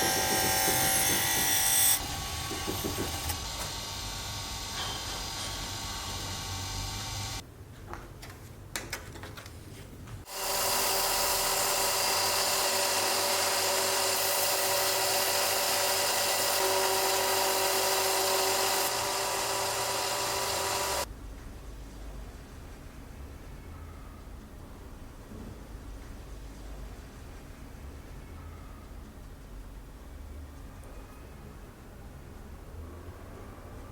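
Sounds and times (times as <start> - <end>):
power tool running: 0.0 - 7.4, 10.3 - 21.1.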